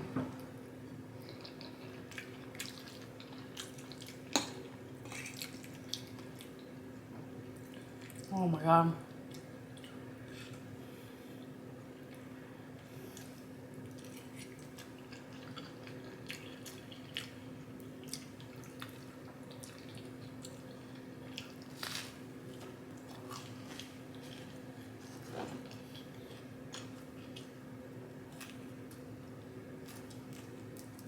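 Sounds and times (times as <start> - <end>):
steady low hum: 0.0 - 31.0
person chewing food: 1.2 - 6.7, 13.0 - 31.0.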